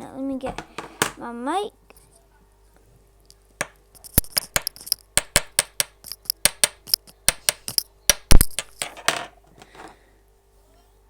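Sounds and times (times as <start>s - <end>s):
rapid sharp dry clicks: 4.0s - 8.6s.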